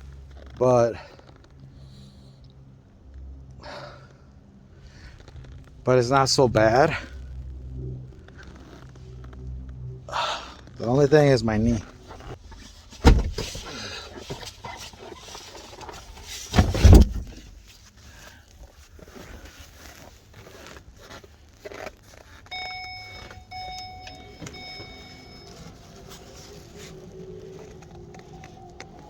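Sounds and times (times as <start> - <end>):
low steady hum: 0.0 - 21.1, 22.1 - 29.0
loud bumps: 12.7 - 13.8, 16.2 - 17.6
car electronic chime: 22.5 - 27.0.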